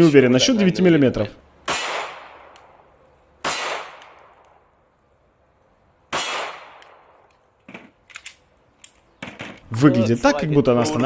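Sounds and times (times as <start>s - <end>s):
gunshots hitting steel plate: 1.7s - 2.8s, 3.4s - 4.3s, 6.1s - 7.8s.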